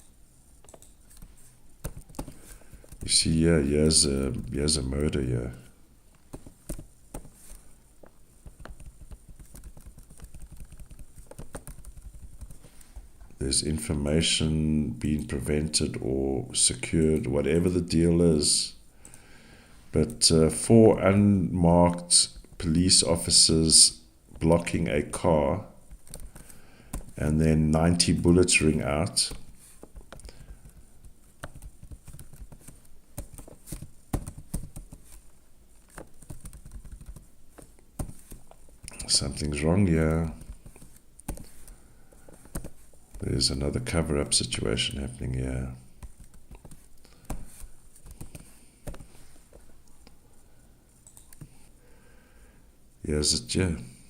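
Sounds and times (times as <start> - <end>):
keyboard and mouse clicks: 0.0 - 3.1, 6.3 - 12.6, 25.9 - 27.2, 29.3 - 35.2, 40.3 - 43.2, 46.0 - 49.1, 51.0 - 51.5
keyboard typing clicks: 8.5 - 12.6.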